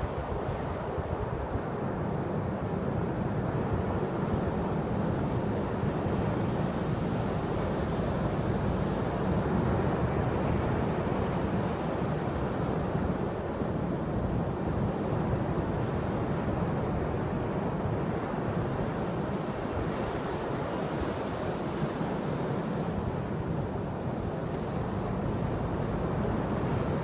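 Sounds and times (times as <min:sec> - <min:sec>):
sea surf washing: 0:00.0 - 0:27.0.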